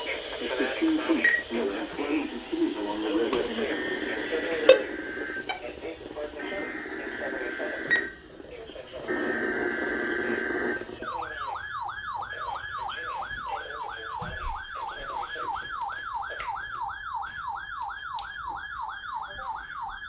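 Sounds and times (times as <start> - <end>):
whooping siren alarm: 0.0 - 20.0.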